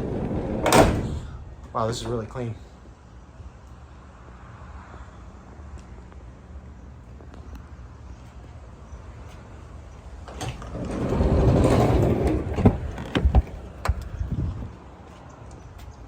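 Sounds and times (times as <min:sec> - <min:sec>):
metallic door clunks: 0:00.0 - 0:02.2
sliding van door rumbling: 0:00.0 - 0:02.2, 0:10.2 - 0:14.7.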